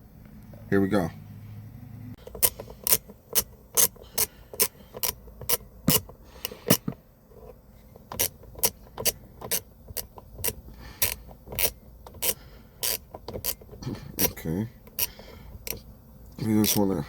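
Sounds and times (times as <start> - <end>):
screwdriver clicking: 2.2 - 7.0, 8.0 - 14.3.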